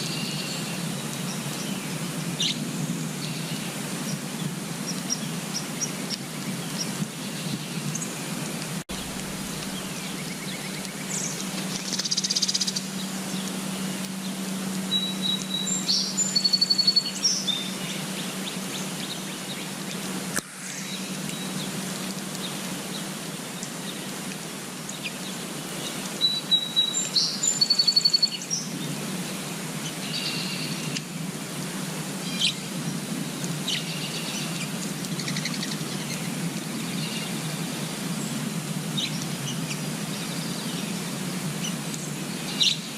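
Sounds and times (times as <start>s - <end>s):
low hum and hiss: 0.0s - 42.9s
songbirds chirping and singing: 8.9s - 19.8s, 39.0s - 42.9s.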